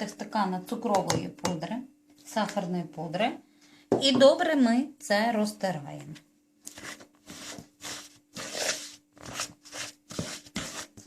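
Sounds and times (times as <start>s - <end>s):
utensil scraping in a bowl: 6.7s - 11.0s.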